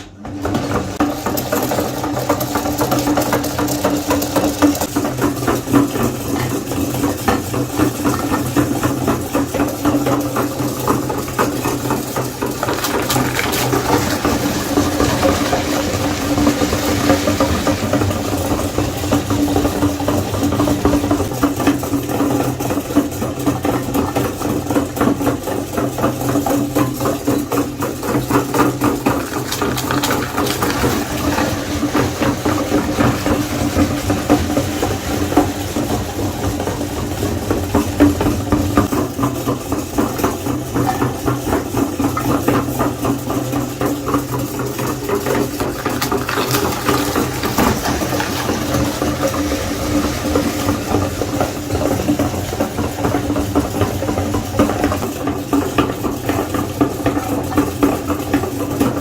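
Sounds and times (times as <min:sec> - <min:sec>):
meat grinder motor hum: 0:00.0 - 0:59.0
food crackling in grinder: 0:00.5 - 0:21.4, 0:27.8 - 0:38.2, 0:43.5 - 0:56.2.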